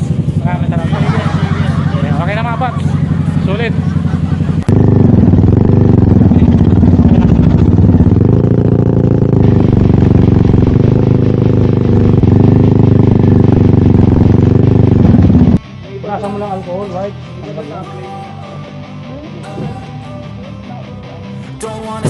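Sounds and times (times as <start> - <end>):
scooter engine idling: 0.0 - 15.6.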